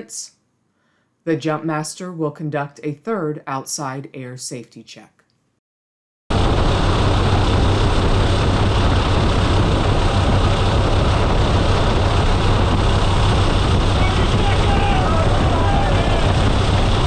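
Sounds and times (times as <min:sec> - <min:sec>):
turboprop engines droning in cabin: 0:06.3 - 0:17.0.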